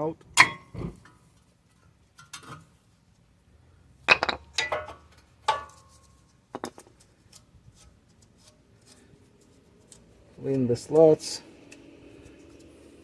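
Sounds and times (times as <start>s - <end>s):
metallic clinks and knocks: 4.1s - 6.9s.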